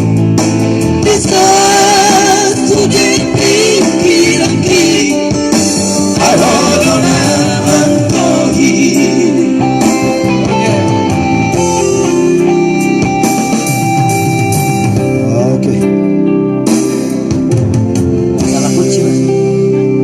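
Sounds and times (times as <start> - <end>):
guitar accompaniment: 0.0 - 20.0
vocal trio singing: 0.8 - 11.0.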